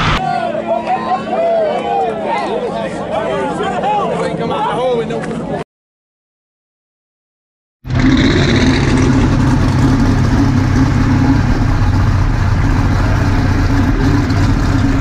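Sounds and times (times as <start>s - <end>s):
race car engine idling: 7.9s - 15.0s.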